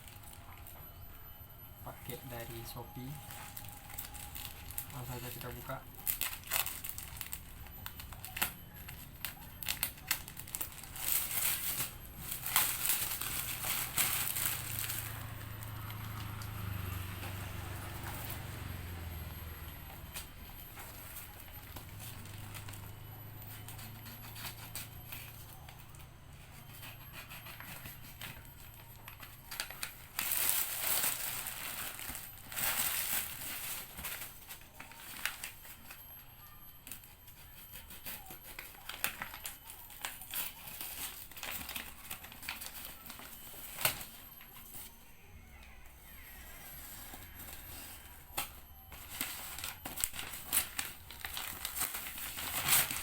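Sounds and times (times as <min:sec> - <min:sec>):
packaging crinkling and tearing: 0:02.0 - 0:18.6, 0:26.5 - 0:36.0, 0:36.8 - 0:44.9, 0:47.0 - 0:53.0.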